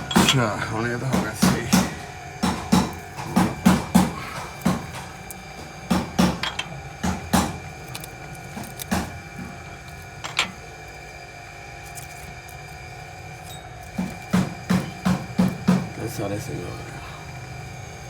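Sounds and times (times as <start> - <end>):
hand tools tapping on metal: 0.0 - 9.6, 10.2 - 10.6, 13.4 - 16.0.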